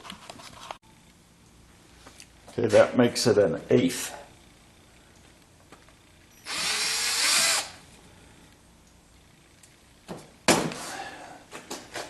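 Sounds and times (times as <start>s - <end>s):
power drill drilling: 6.4s - 7.8s.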